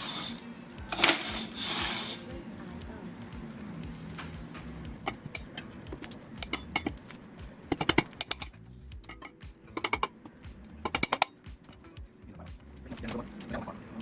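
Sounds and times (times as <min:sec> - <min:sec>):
metal hand tools clinking: 0:03.7 - 0:12.0.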